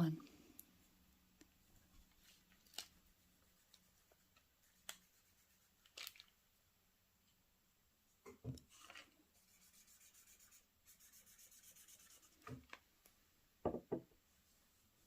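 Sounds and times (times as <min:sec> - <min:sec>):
cotton swab rubbing on paper: 0:03.4 - 0:06.0, 0:09.4 - 0:12.6.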